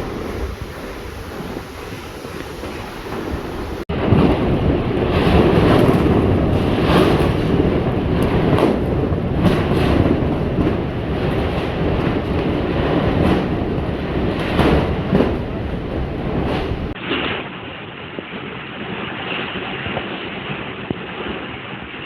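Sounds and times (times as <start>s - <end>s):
strong wind rumbling: 0.0s - 20.9s
sheet metal banging and rattling: 3.1s - 17.0s.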